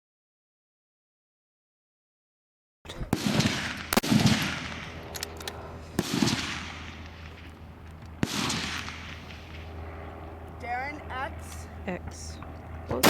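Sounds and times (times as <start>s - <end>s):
rifle shots with rolling echo: 3.0s - 10.0s.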